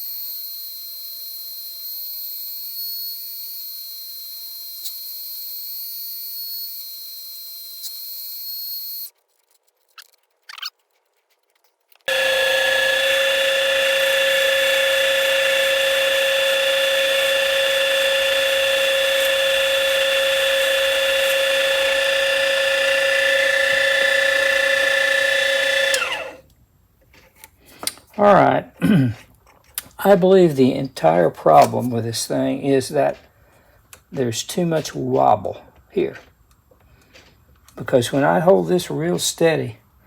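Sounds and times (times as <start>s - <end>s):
lathe motor whining: 12.1s - 26.4s
clicks: 12.1s - 26.5s.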